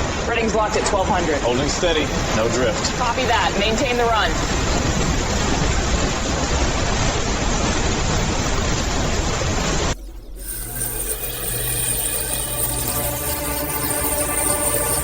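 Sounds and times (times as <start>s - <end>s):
hum of held tones: 9.9s - 15.0s.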